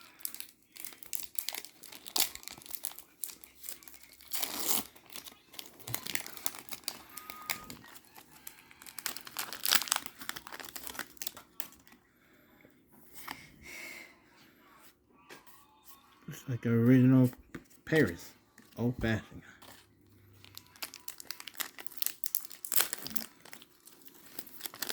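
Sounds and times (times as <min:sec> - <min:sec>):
foil wrapper crinkling: 0:00.0 - 0:12.0, 0:19.7 - 0:24.9.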